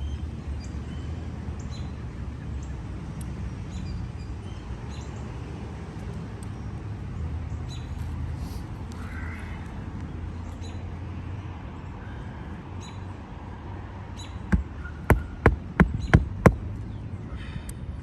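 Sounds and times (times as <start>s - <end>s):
hammer striking nail into shingle: 14.5s - 16.7s.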